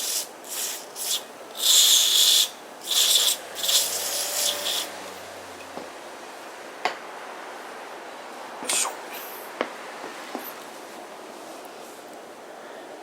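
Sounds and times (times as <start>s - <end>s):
aerosol spray hissing: 0.0s - 5.0s.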